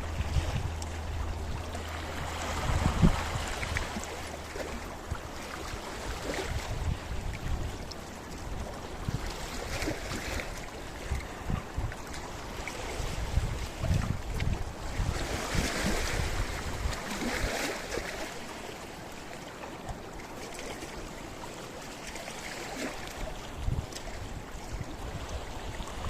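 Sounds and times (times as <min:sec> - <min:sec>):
waves washing against rocks: 0:00.0 - 0:19.1.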